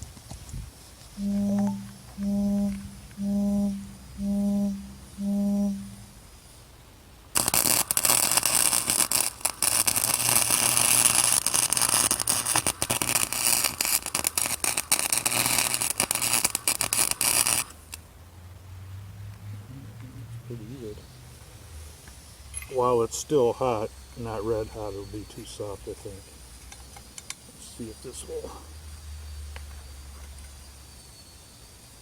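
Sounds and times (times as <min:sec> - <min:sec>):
short humming beeps: 0:01.2 - 0:06.2
welder arc crackling and popping: 0:07.4 - 0:18.0.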